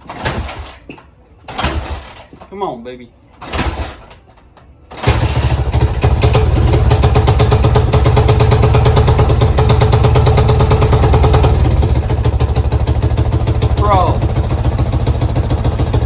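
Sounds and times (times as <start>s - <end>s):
dirt bike engine running: 5.0s - 16.0s.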